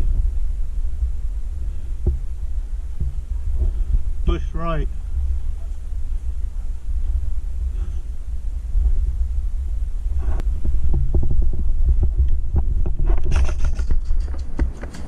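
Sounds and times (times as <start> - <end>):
camera jostling thumps: 2.0 - 4.3, 10.1 - 15.0
sharp clicks and knocks: 12.0 - 15.0.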